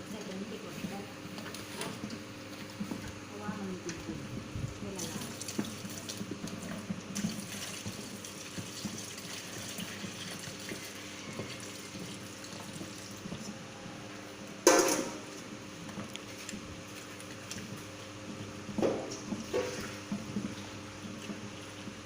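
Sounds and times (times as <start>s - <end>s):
water pouring into bucket: 4.9s - 13.4s.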